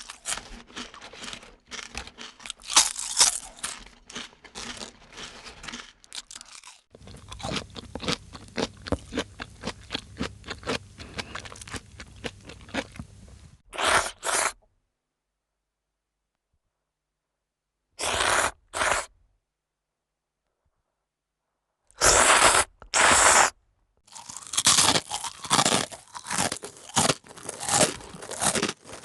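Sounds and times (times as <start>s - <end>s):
person chewing crisp food: 0.0s - 14.6s, 18.0s - 19.1s, 22.0s - 29.0s.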